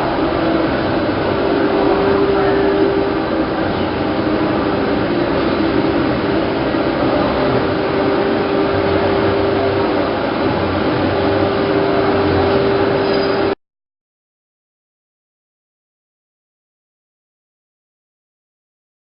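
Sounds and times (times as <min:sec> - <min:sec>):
plastic bag cutting machine running: 0:00.0 - 0:13.6.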